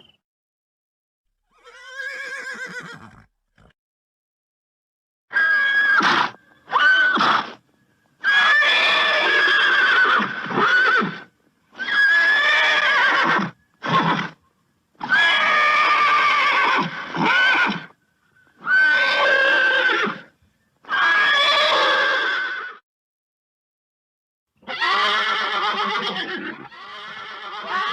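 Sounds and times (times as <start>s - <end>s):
horse neighing: 1.5s - 3.7s, 8.2s - 11.2s, 11.8s - 14.4s, 15.0s - 18.0s, 18.6s - 20.3s, 20.9s - 22.8s, 24.6s - 27.9s.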